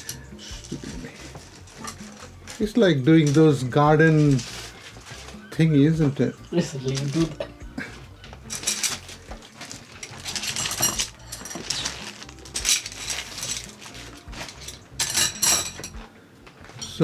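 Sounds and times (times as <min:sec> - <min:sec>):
metal and plastic parts clinking: 0:00.0 - 0:07.5, 0:08.2 - 0:17.0.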